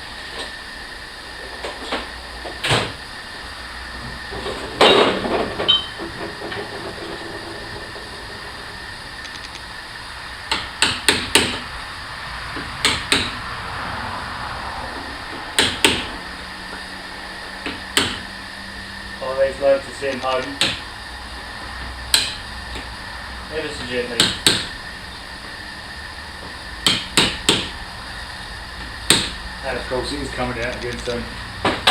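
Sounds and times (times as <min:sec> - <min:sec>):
steady background hum: 0:00.0 - 0:31.9
tools striking metal: 0:22.1 - 0:22.4.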